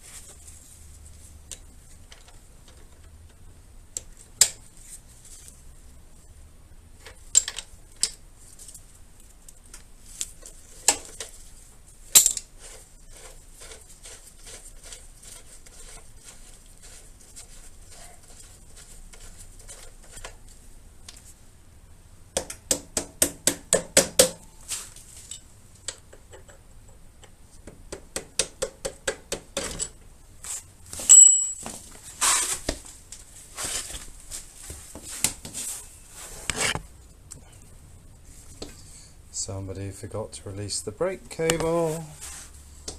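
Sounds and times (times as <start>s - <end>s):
metal tool clinks: 31.1s - 31.7s.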